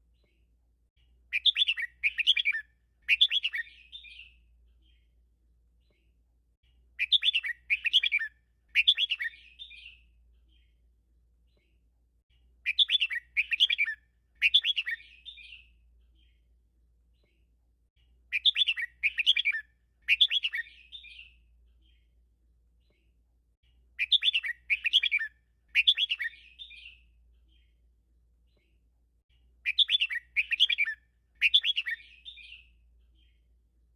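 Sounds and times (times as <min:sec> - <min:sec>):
bulbul singing: 0:01.3 - 0:05.1, 0:07.0 - 0:10.8, 0:12.6 - 0:16.4, 0:18.3 - 0:22.1, 0:24.0 - 0:27.8, 0:29.6 - 0:33.4.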